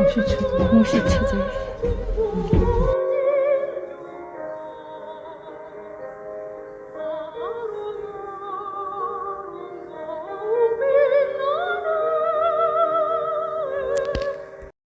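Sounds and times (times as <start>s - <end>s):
sustained lower tones: 0.0s - 3.3s
person singing with vibrato: 0.0s - 14.6s.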